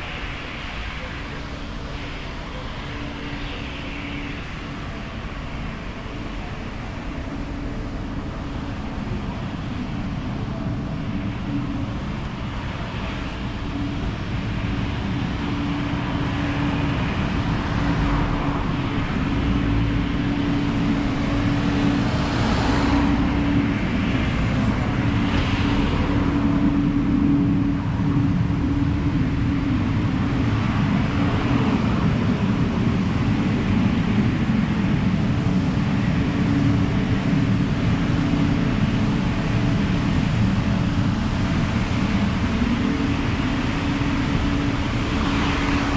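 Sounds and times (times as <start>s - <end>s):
traffic engine rumble: 0.0s - 45.9s
vehicles passing: 17.5s - 30.0s.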